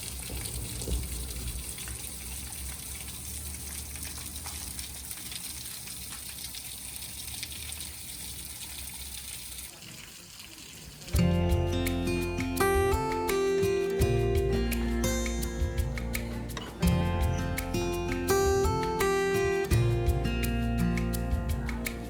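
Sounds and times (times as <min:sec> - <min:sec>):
water gushing: 0:00.0 - 0:12.6
acoustic guitar music: 0:11.1 - 0:22.0.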